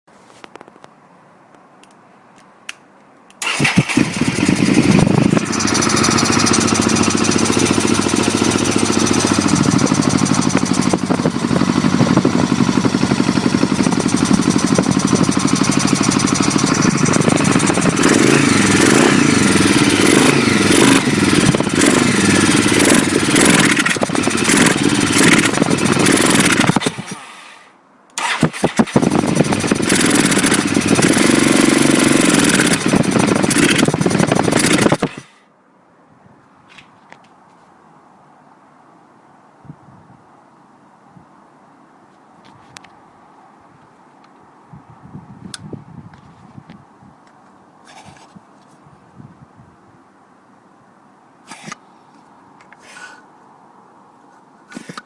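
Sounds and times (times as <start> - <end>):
motorcycle engine starting and running: 3.4 - 27.4, 28.2 - 35.4.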